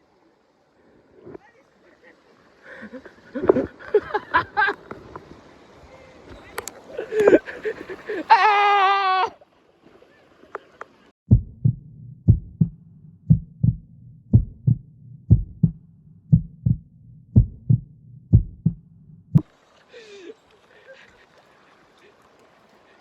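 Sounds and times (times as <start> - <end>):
heartbeat thumps: 11.3 - 19.4.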